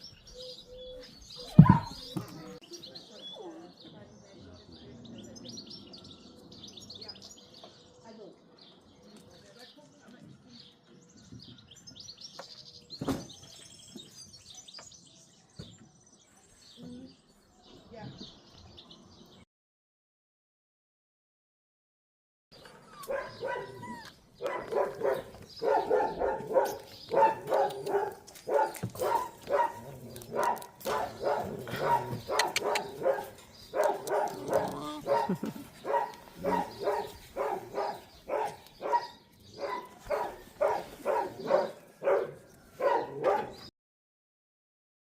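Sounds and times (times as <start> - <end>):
puppies barking and yipping: 0.8 - 2.4, 22.6 - 43.7
puppy whimpering: 22.7 - 24.2, 34.3 - 35.4.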